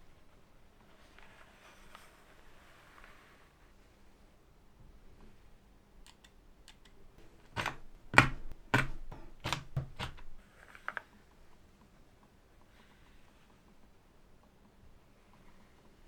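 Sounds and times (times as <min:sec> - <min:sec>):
keyboard switch clicks: 0:06.0 - 0:10.4.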